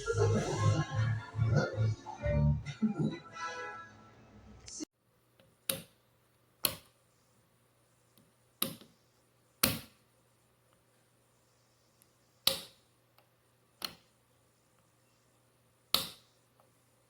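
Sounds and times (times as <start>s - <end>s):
music: 0.0s - 4.8s.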